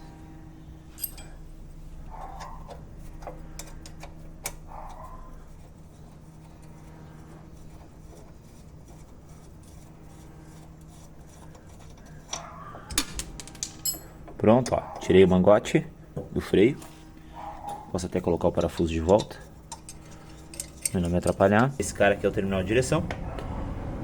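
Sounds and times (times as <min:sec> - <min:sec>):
low hum: 0:00.0 - 0:15.1, 0:15.8 - 0:24.0
hand tools clicking and rattling: 0:00.9 - 0:01.4, 0:11.5 - 0:15.1, 0:16.8 - 0:22.2.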